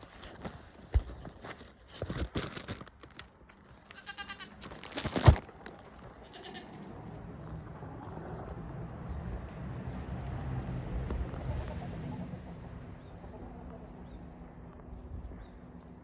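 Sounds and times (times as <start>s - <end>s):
goat bleating: 3.9s - 4.6s, 6.2s - 6.8s.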